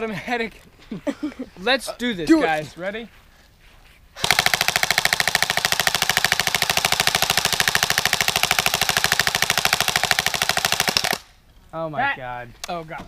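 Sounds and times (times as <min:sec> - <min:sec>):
airsoft rifle automatic fire: 0:04.2 - 0:11.3.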